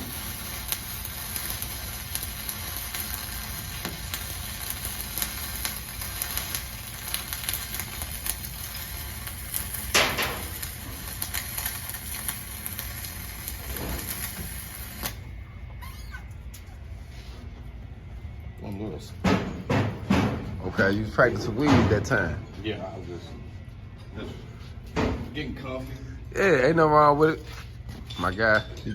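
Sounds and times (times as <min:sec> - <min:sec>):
arc welding crackling: 0:00.0 - 0:16.7, 0:18.6 - 0:22.8, 0:25.3 - 0:28.6.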